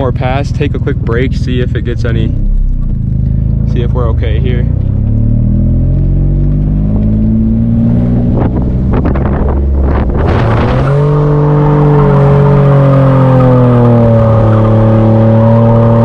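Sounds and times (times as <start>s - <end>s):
car engine running hard: 0.0s - 16.0s.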